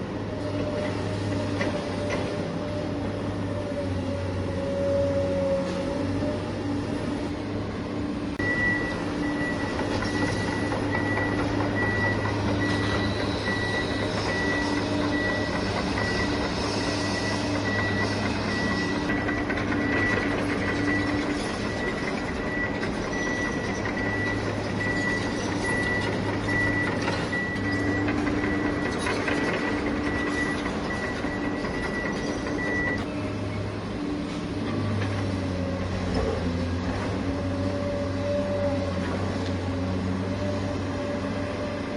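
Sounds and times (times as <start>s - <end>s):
reversing alarm beeping: 8.4s - 33.1s.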